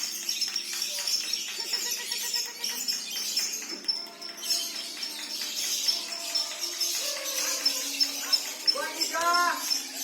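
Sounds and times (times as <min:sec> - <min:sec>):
lovebirds chattering and trilling: 0:00.0 - 0:10.0.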